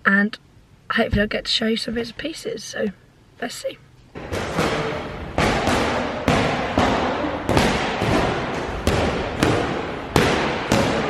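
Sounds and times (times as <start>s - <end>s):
punches thudding on pads: 4.2s - 11.0s.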